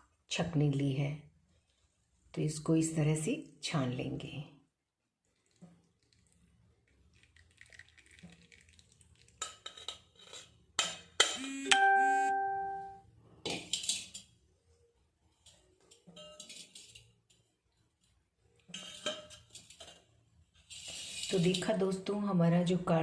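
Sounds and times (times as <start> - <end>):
metal pots clinking: 8.0 - 11.5, 13.4 - 14.4, 15.3 - 17.5, 18.6 - 20.2.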